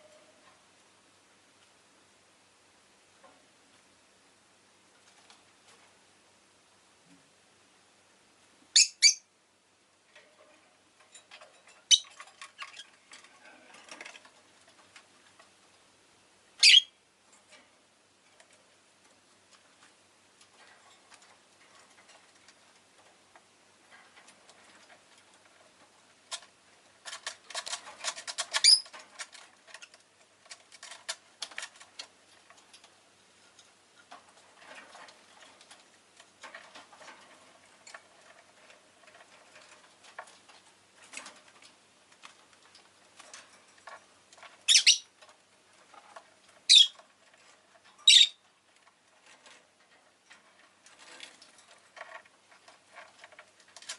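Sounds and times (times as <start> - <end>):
bird clicking and scratching: 5.0 - 6.0, 10.1 - 15.9, 17.3 - 53.9
shrill bird calls: 8.8 - 9.3, 16.6 - 16.9, 44.7 - 45.1.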